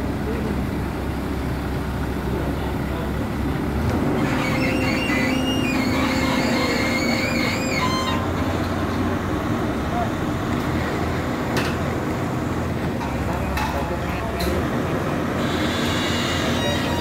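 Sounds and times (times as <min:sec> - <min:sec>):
excavator diesel engine running: 0:00.0 - 0:17.0
high wavering whine: 0:04.2 - 0:08.6.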